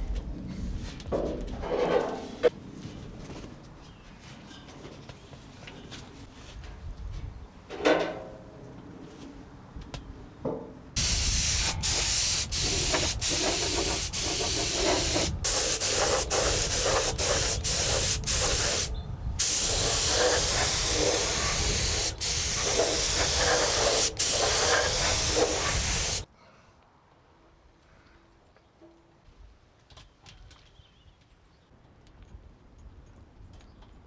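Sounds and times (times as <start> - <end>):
paint spray gun hissing: 11.0 - 26.3.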